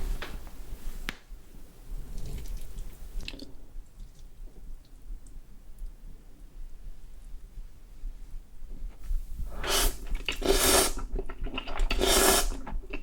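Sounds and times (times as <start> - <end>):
wet chewing: 9.6 - 13.0.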